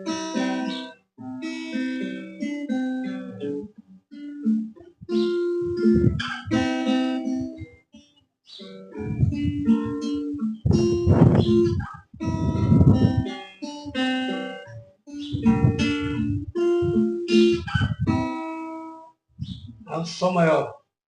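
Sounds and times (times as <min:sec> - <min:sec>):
acoustic guitar: 0:00.0 - 0:20.8.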